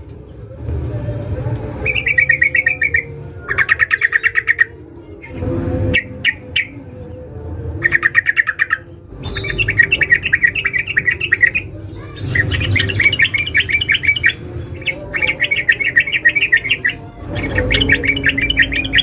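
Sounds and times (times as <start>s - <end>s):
bird chattering calls: 1.9s - 4.7s, 7.8s - 19.0s.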